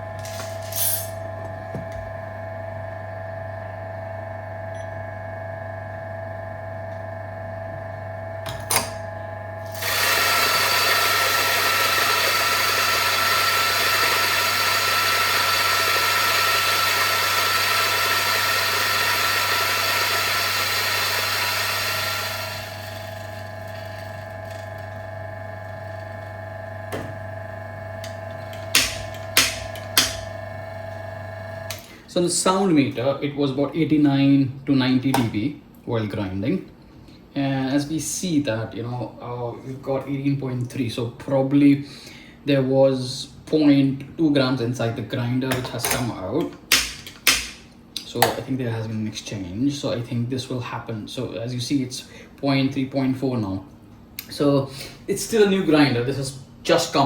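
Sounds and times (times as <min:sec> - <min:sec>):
coffee grinder whirring: 0:00.0 - 0:02.0, 0:08.5 - 0:32.1.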